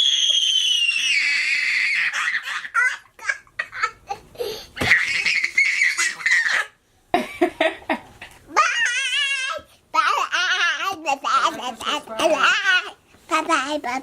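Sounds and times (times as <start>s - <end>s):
girl squealing: 0.0s - 2.8s.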